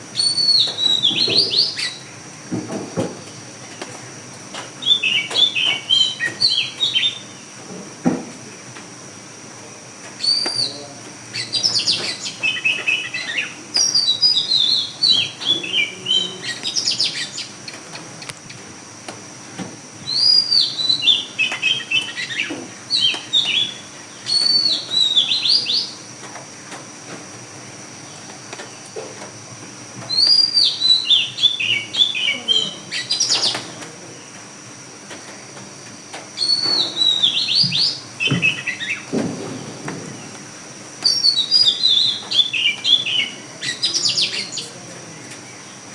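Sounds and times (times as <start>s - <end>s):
bird chirping high phrases: 20.1s - 26.0s, 30.1s - 33.8s, 41.0s - 44.8s.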